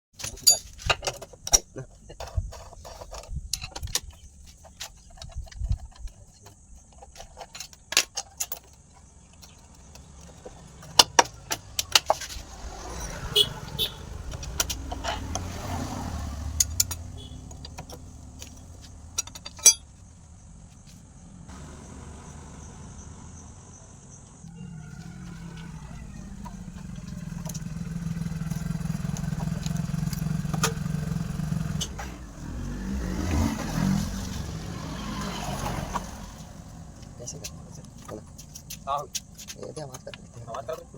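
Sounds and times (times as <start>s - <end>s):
motorcycle chain hum: 0.2s - 40.9s
sharp metallic clicks: 16.6s - 19.9s.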